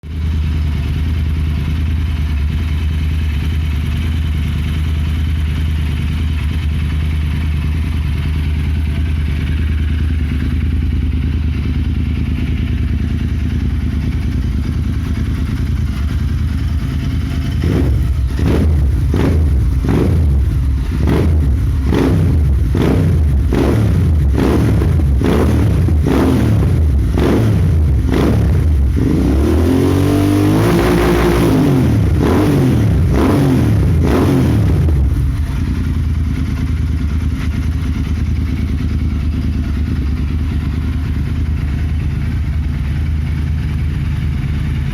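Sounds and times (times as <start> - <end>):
motorcycle engine idling: 0.0 - 29.8, 31.6 - 44.9
motorcycle throttle blips: 7.7 - 29.4.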